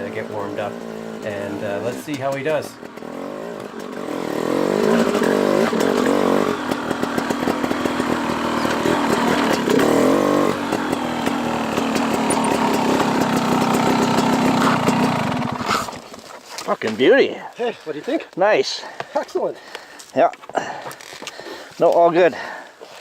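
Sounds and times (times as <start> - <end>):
dirt bike engine revving: 0.0 - 16.4.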